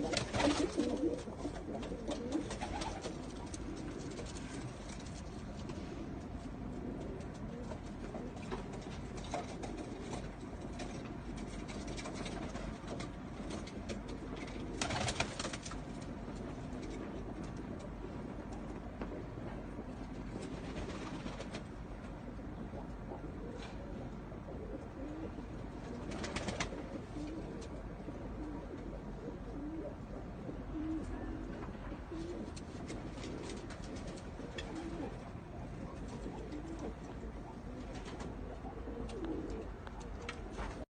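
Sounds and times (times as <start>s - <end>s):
rustle: 0.0s - 6.4s
pigeons cooing: 0.0s - 40.8s.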